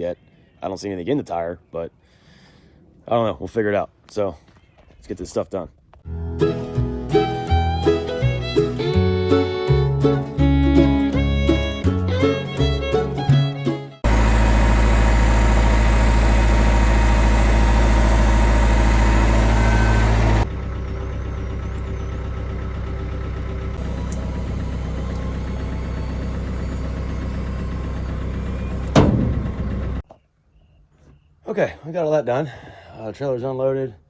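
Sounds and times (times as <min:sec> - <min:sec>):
engine running steadily: 0:14.0 - 0:30.0.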